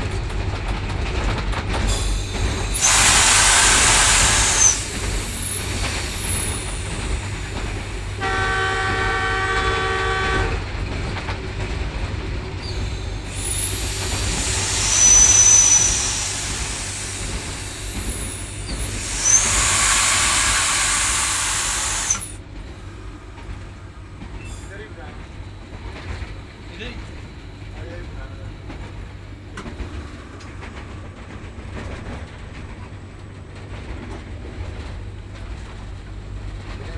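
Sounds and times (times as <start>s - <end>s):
train rumbling past: 0.0s - 36.9s
high squeal: 2.0s - 8.2s, 12.6s - 22.4s
locomotive chord horn: 8.2s - 10.7s.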